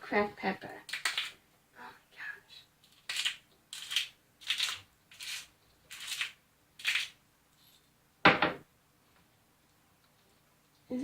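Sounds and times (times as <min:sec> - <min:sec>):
pepper grinder grinding: 0:02.8 - 0:07.2.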